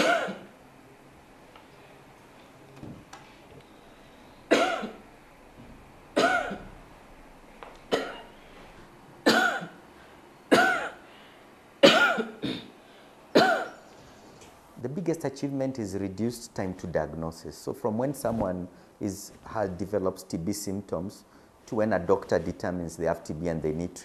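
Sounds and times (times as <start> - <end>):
woman coughing: 0.0 - 0.5, 4.5 - 5.0, 6.2 - 6.7, 7.9 - 8.3, 9.2 - 9.8, 10.5 - 11.0, 11.8 - 13.8.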